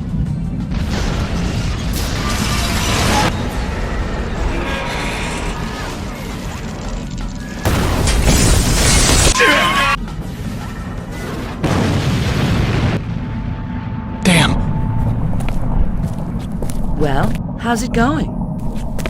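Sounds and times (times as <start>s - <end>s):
crashing booming sound effects: 7.7s - 9.4s.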